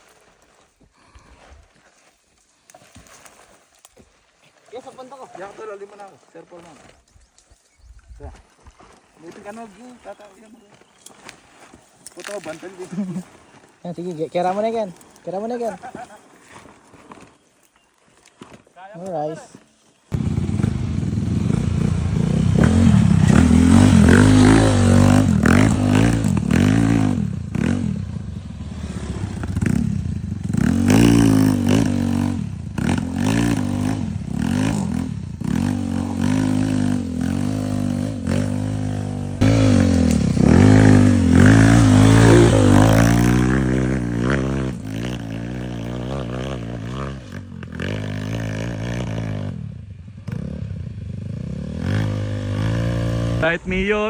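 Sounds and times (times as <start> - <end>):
small motorcycle engine revving: 20.1 - 53.6.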